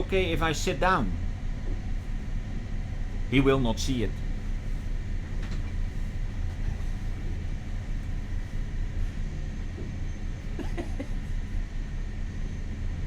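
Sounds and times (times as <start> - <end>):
boat engine humming: 0.0 - 13.0.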